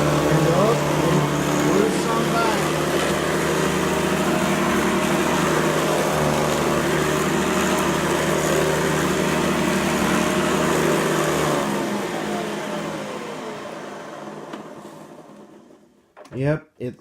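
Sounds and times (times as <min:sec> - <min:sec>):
vacuum cleaner motor whine: 0:00.0 - 0:16.0.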